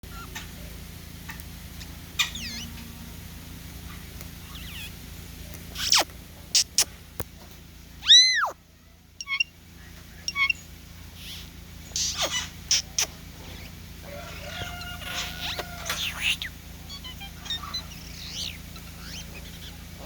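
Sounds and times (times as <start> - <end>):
jays calling: 1.7 - 2.8, 4.3 - 7.0, 8.0 - 8.6, 9.2 - 20.0.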